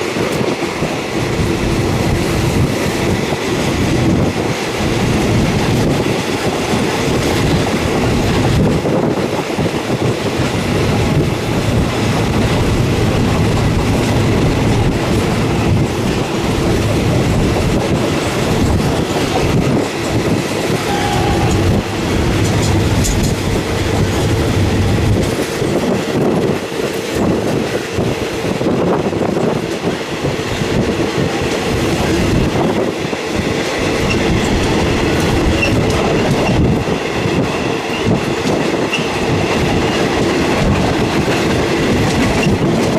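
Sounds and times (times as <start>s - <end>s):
train rumble: 0.0s - 42.9s
train wheels clacking over rail joints: 0.0s - 42.9s
rush of air: 7.9s - 26.6s.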